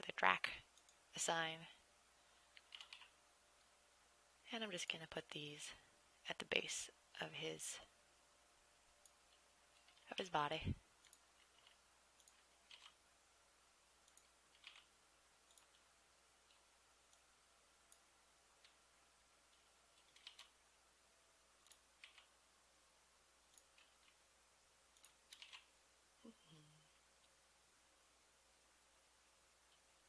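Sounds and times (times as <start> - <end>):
computer mouse and keyboard clicks: 2.5 - 3.1, 9.0 - 10.1, 11.0 - 13.0, 14.0 - 17.2, 19.5 - 20.6, 21.6 - 22.3, 23.5 - 24.2, 24.9 - 25.7.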